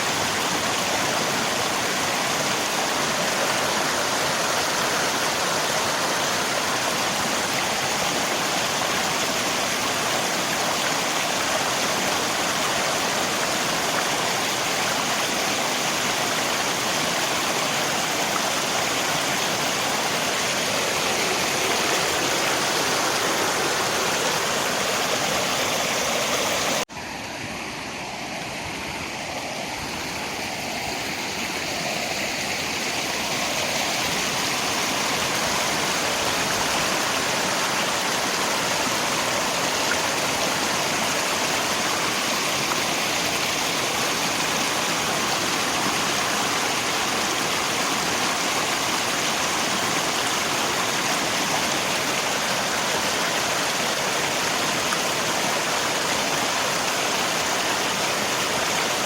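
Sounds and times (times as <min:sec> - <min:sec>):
rain: 0:00.0 - 0:59.0
river water rushing: 0:00.0 - 0:59.0.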